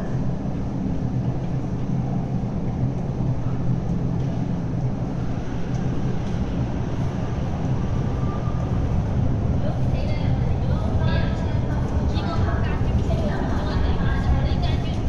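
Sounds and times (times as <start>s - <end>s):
train rumbling through station: 0.0s - 15.0s.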